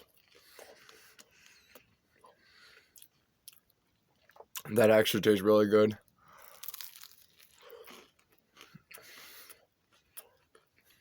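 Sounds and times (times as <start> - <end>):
person chewing food: 0.0 - 4.7, 6.1 - 11.0
small crunches: 6.3 - 11.0.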